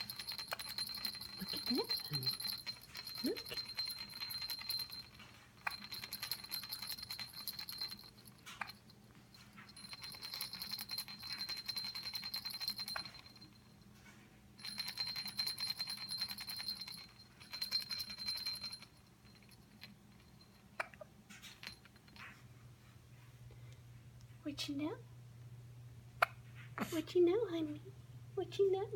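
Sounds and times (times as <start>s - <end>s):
jingle-bell baby rattle shaken: 0.0s - 13.8s, 14.6s - 22.4s.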